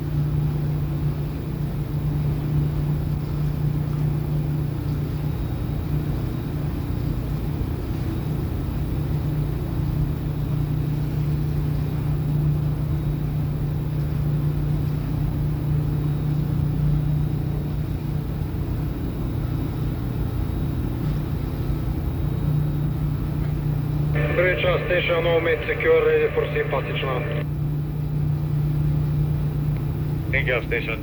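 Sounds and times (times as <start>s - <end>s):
ship engine drone: 24.2s - 27.6s.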